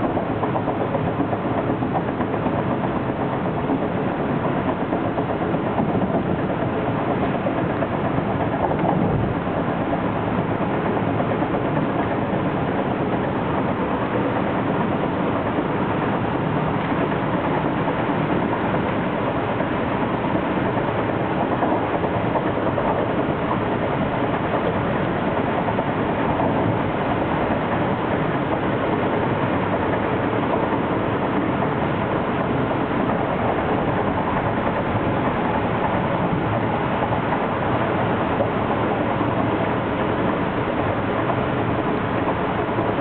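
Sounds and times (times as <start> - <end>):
train wheels rumbling on rail: 0.0 - 43.0.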